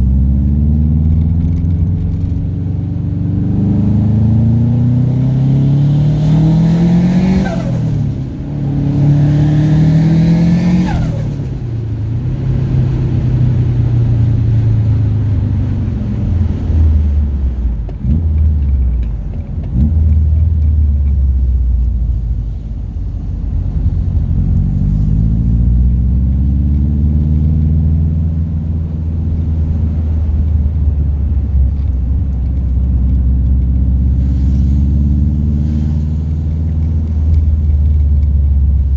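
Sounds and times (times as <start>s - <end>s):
turbocharged car engine accelerating: 0.0s - 38.9s.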